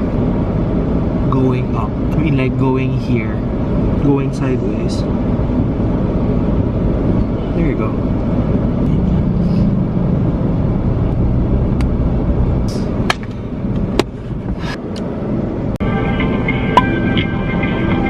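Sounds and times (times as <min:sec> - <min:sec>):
car road rumble inside cabin: 0:00.0 - 0:18.0
music: 0:15.8 - 0:18.0.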